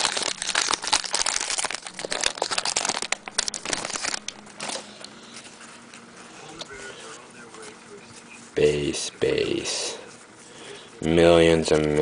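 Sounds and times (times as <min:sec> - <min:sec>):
foil pack tearing and crinkling: 0:00.0 - 0:04.8.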